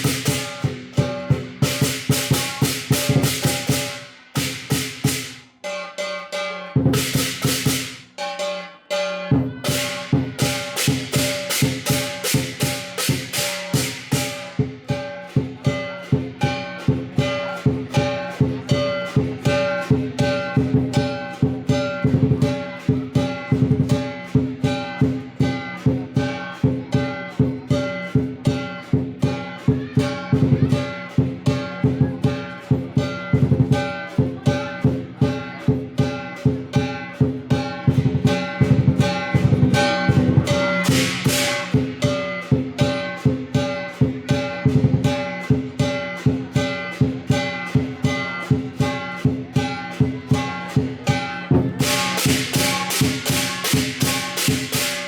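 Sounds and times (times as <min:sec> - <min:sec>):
cymbal crashes: 0:00.0 - 0:26.3, 0:37.6 - 0:49.0, 0:49.6 - 0:55.0
lion dance percussion music: 0:00.0 - 0:55.0.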